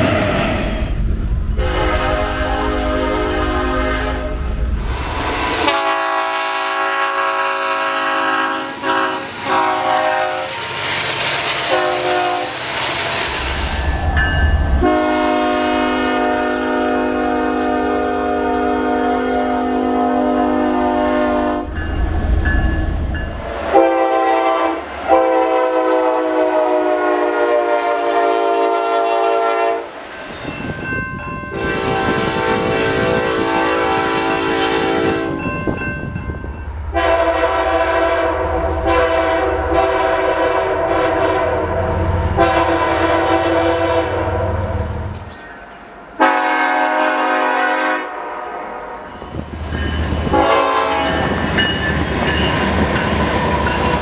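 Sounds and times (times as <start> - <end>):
passing train rumble: 0.0 - 54.0
locomotive air horn blasts: 1.6 - 4.5, 5.2 - 10.6, 11.6 - 12.7, 14.8 - 21.8, 23.6 - 29.9, 31.5 - 35.5, 36.9 - 44.7, 46.2 - 49.3, 50.2 - 51.5.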